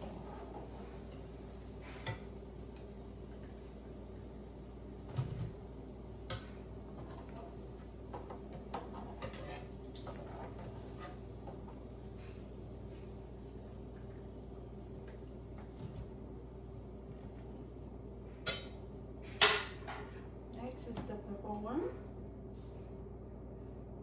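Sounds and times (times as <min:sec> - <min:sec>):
utensils clinking against pot: 0:18.4 - 0:18.8.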